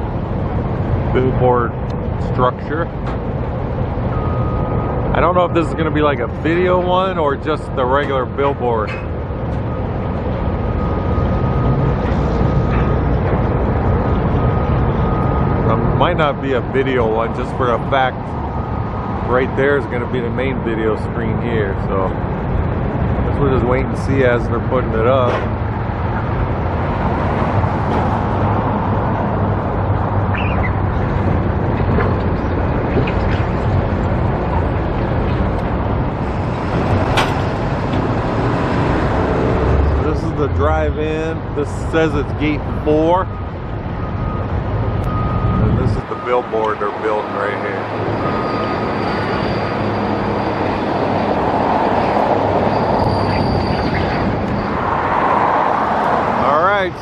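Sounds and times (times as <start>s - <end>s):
road traffic rumble: 0.0s - 57.0s.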